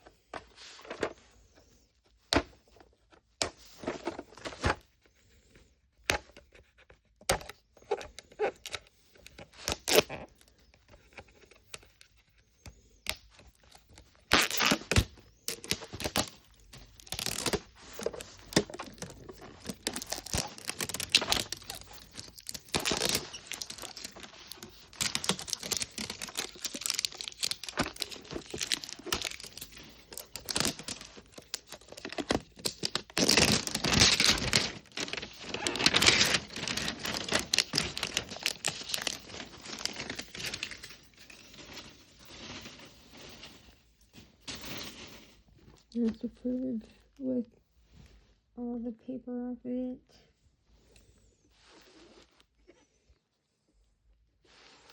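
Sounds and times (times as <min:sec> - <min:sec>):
paper tearing and crumpling: 0:09.5 - 0:10.2, 0:13.5 - 0:42.8.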